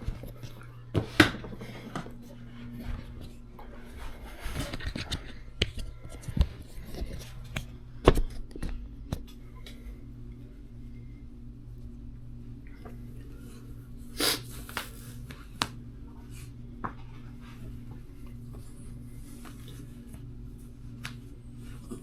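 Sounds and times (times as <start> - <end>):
rustling and handling noises: 0.0 - 9.9, 14.4 - 22.0
steady low hum: 0.0 - 22.0.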